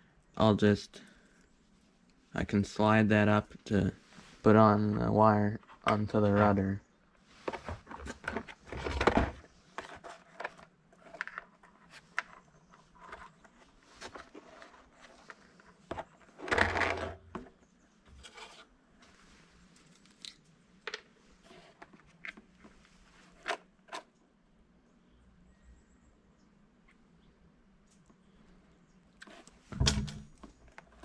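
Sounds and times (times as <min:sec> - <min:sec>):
rustling handling noises: 0:03.9 - 0:24.1.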